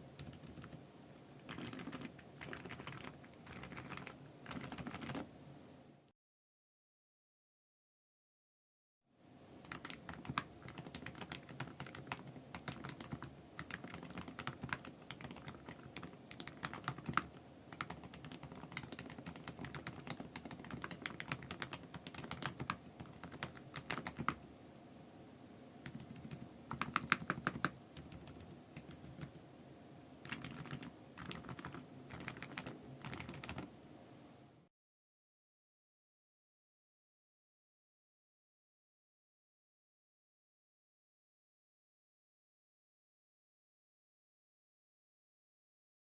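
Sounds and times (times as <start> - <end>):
quiet keyboard keystrokes: 0.2 - 0.8, 1.4 - 5.3, 9.6 - 24.4, 25.8 - 29.4, 30.2 - 33.7.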